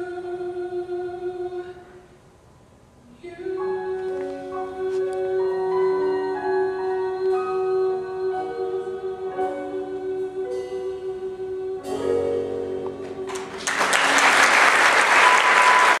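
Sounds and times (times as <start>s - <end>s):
soft musical accompaniment: 3.1s - 14.5s
audience applause: 13.3s - 16.0s.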